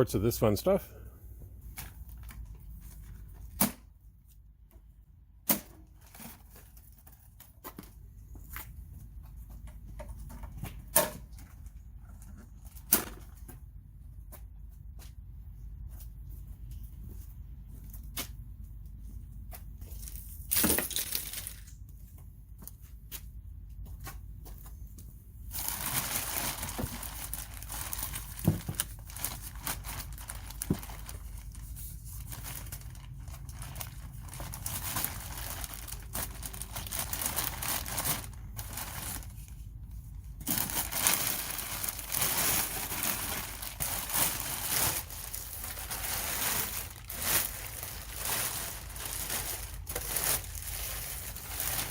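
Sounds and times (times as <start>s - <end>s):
plastic wrapping crinkling: 19.8s - 21.8s, 25.5s - 51.9s.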